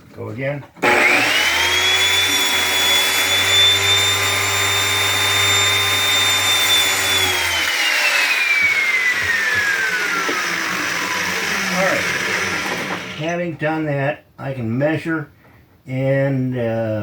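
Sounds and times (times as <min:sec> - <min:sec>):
circular saw whining: 0:00.8 - 0:13.4
saw blade spinning down: 0:00.8 - 0:13.4.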